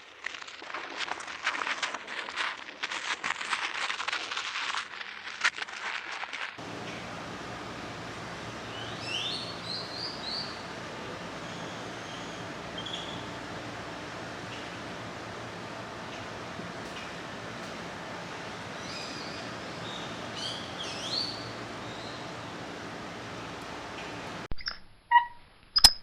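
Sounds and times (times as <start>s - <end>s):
crackling and rustling: 0.0s - 8.8s
steady outdoor hiss: 6.6s - 24.5s
bird chirps: 8.6s - 13.5s, 18.7s - 22.6s.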